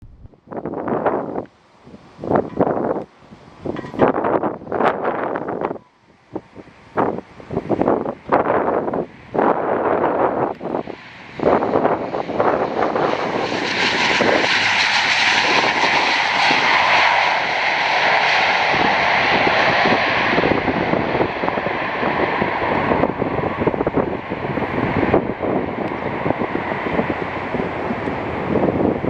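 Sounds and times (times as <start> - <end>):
wind buffeting microphone: 0.0 - 29.0
turboprop airliner passing: 6.4 - 29.0.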